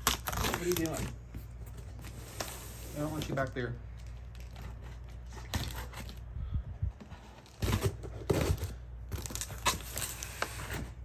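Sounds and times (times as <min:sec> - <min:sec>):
cardboard and packing rustling: 0:00.0 - 0:11.0.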